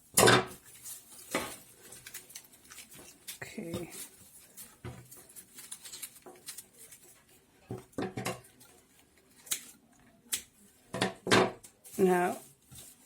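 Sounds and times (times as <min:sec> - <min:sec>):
scissors snipping: 0:09.4 - 0:10.5.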